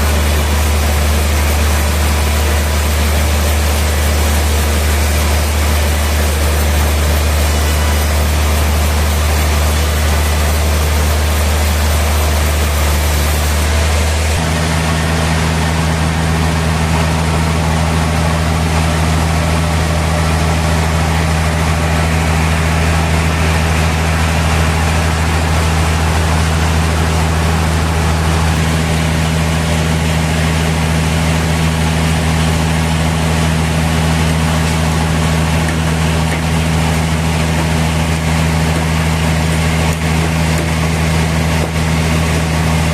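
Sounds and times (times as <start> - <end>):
sawmill machinery droning: 0.0 - 42.9.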